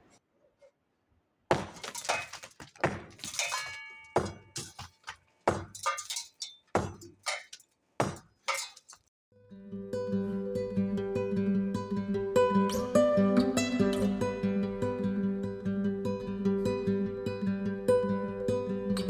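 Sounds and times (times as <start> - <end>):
brick rubble crashing and clinking: 1.5 - 9.1.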